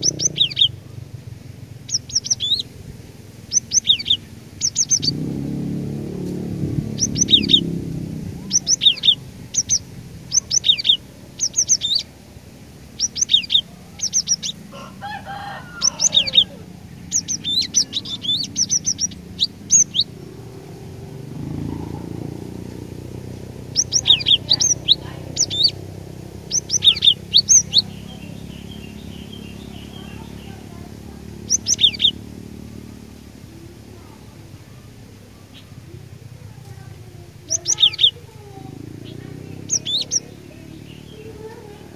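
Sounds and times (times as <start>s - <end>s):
bird singing high notes: 3.5s - 5.7s, 6.8s - 7.8s, 8.4s - 12.1s, 12.9s - 14.7s, 15.7s - 22.3s, 23.6s - 30.8s, 31.4s - 32.2s.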